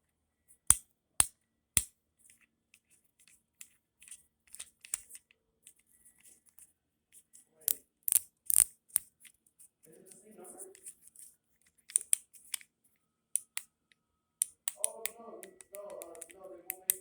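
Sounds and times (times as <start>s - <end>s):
plastic fidget toy clicking: 7.7s - 9.2s, 11.8s - 12.7s, 13.4s - 13.7s, 14.4s - 17.0s.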